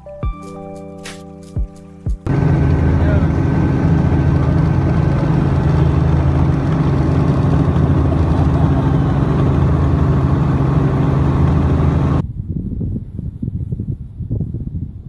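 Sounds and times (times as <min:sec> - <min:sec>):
loud engine-like drone: 0:02.3 - 0:12.2.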